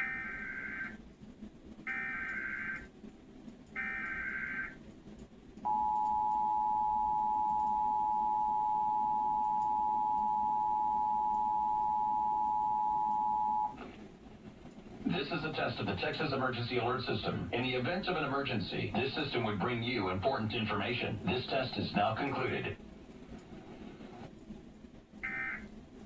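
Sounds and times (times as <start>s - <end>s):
two-tone attention signal: 5.7s - 13.8s.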